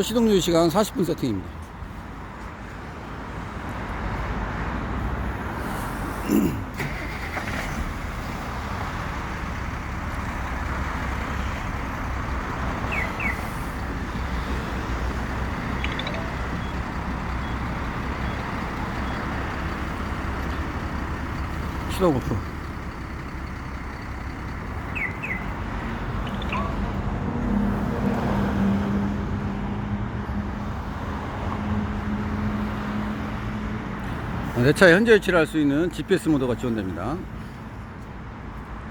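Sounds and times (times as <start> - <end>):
diesel engine idling: 6.8 - 27.8
falling pitch sound: 15.8 - 16.8.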